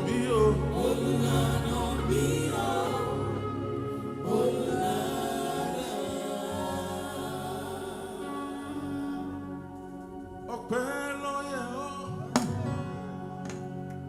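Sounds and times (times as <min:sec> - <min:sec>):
gospel singing with accompaniment: 0:00.0 - 0:14.0.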